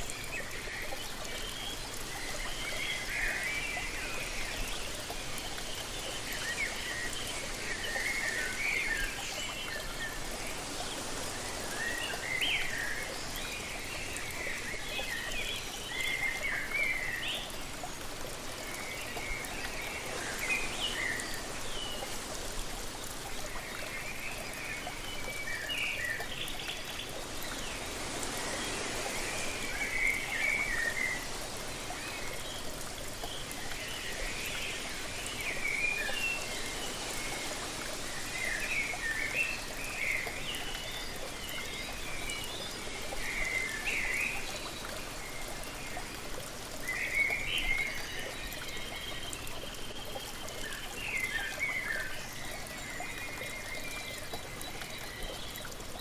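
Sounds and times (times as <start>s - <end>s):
waterfall rushing: 27.0s - 40.4s.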